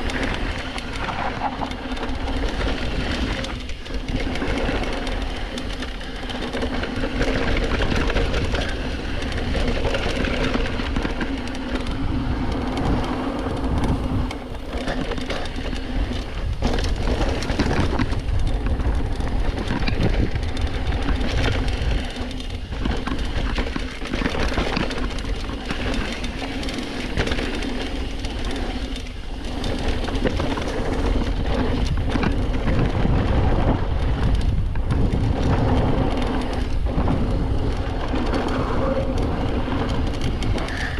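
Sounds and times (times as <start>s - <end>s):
bike frame rattling: 0.0s - 40.9s
tire and wind rush: 0.0s - 40.9s.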